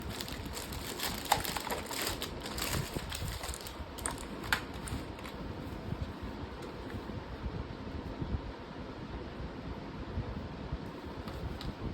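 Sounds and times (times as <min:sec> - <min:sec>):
packaging crinkling and clicking: 0:00.0 - 0:05.4.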